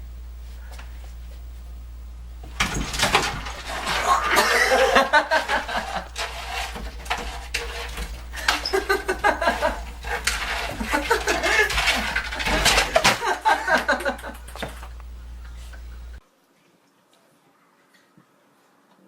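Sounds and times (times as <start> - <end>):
people laughing: 3.8 - 6.2, 8.3 - 16.2.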